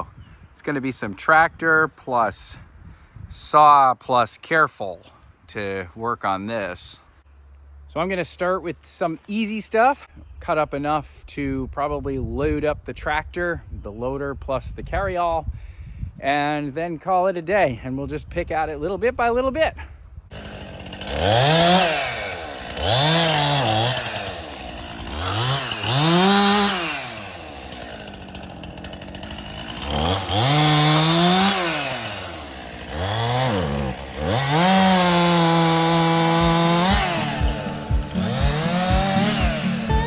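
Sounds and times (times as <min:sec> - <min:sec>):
chainsaw revving and idling: 0:20.3 - 0:40.0.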